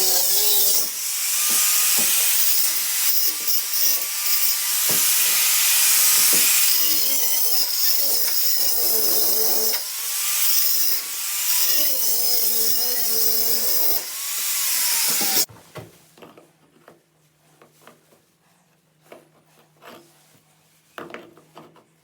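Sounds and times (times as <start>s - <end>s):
electric power tool running: 0.0s - 15.5s.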